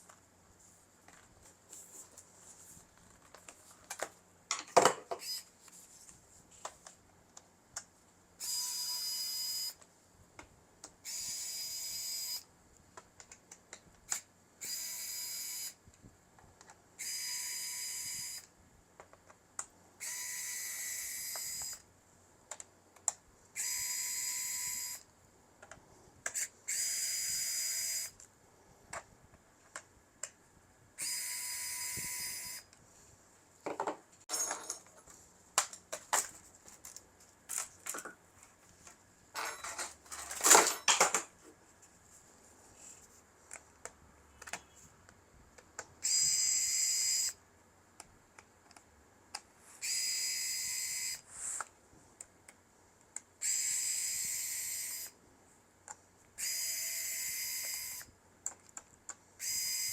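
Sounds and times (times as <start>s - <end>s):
electric screwdriver whirring: 20.0s - 21.8s, 23.6s - 25.0s, 31.0s - 32.6s, 46.0s - 47.4s, 53.4s - 55.1s, 56.4s - 58.1s, 59.4s - 59.9s.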